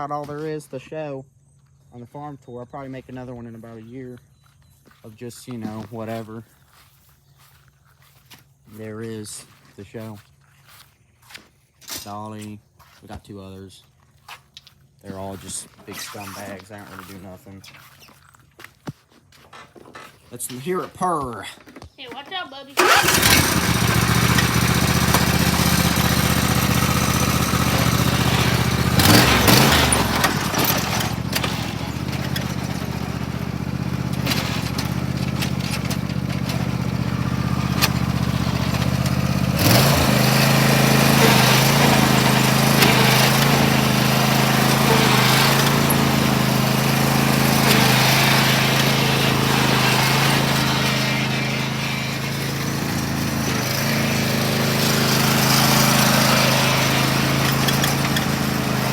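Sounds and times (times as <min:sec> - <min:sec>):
small petrol engine running: 0:22.7 - 0:58.9.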